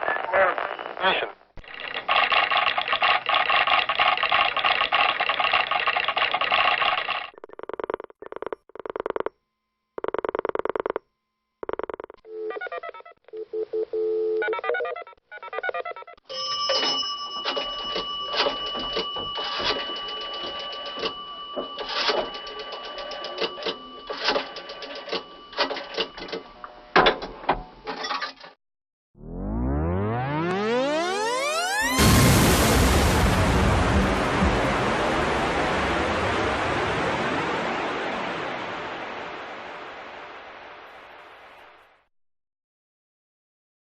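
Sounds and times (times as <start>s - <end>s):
electronic dialing sounds: 0.4s - 9.4s, 10.0s - 11.0s, 11.6s - 26.4s
rapid clicks: 1.6s - 9.4s
phone ringing: 11.6s - 26.8s.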